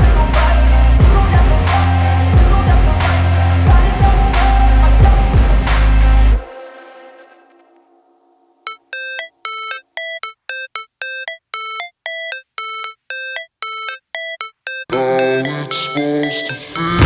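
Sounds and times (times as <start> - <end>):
rap backing music: 0.0 - 6.4, 14.2 - 17.0.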